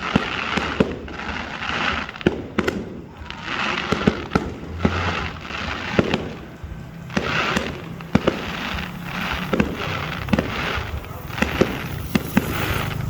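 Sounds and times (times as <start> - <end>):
firework shells bursting: 0.0 - 13.0
fireworks hissing: 0.0 - 13.0.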